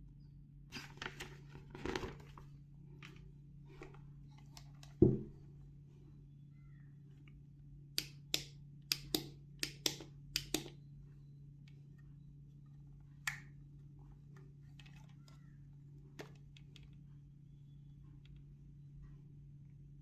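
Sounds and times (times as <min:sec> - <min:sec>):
packaging rustling: 0:00.8 - 0:04.0.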